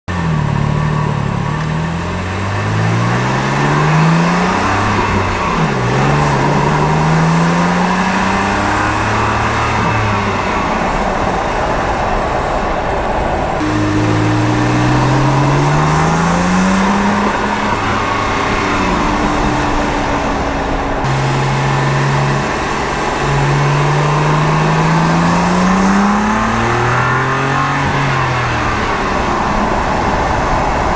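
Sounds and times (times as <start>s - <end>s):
car engine pulling hard: 0.1s - 30.9s
turbo whine: 13.6s - 30.0s.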